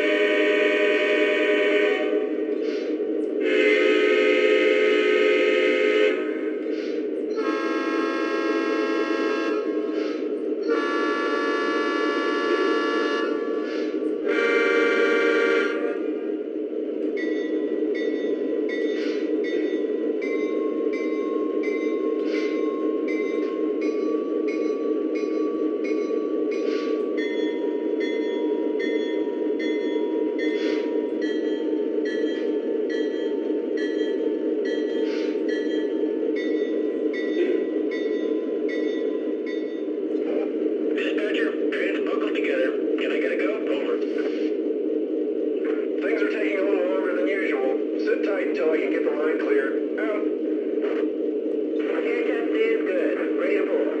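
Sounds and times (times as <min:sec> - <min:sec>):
model train rumbling on track: 0:00.0 - 0:44.4
model train horn blasts: 0:03.4 - 0:06.3, 0:07.4 - 0:09.8, 0:10.7 - 0:13.6, 0:14.2 - 0:16.0
bell ringing steadily: 0:17.2 - 0:40.0.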